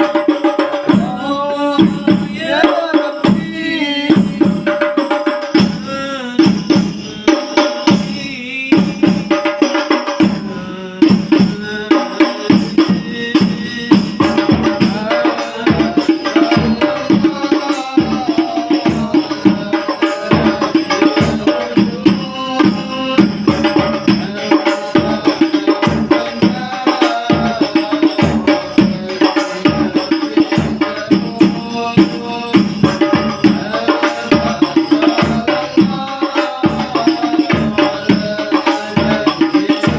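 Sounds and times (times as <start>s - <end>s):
frame drum ensemble rhythm: 0.0s - 39.9s
voices singing: 0.0s - 39.9s.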